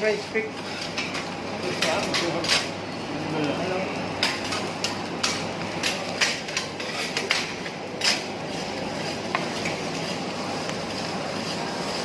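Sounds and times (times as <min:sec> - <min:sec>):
griddle hissing: 0:00.0 - 0:12.0
metal spatulas striking griddle: 0:04.2 - 0:08.3.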